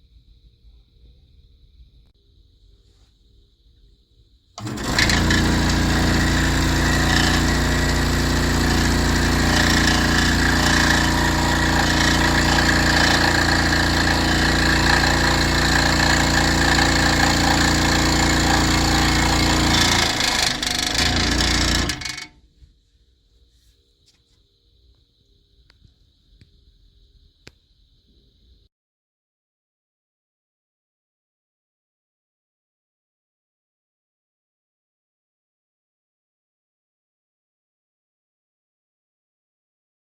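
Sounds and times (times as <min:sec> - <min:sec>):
scroll saw running: 0:04.6 - 0:22.3.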